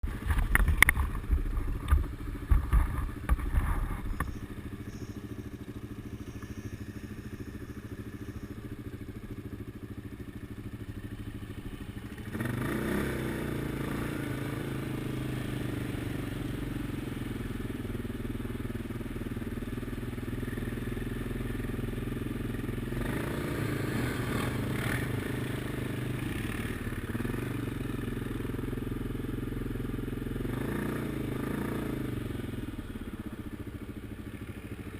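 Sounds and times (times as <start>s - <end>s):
atv engine running: 0.0s - 34.9s.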